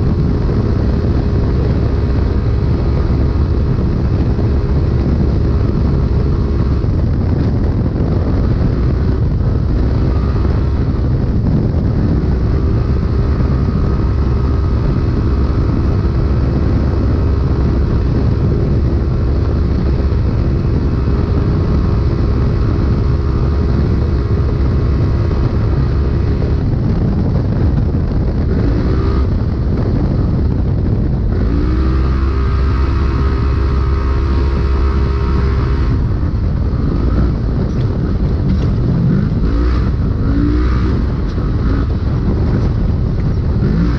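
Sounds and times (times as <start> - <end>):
engine running hard: 0.0 - 43.9
rumble over rough ground: 0.0 - 43.9.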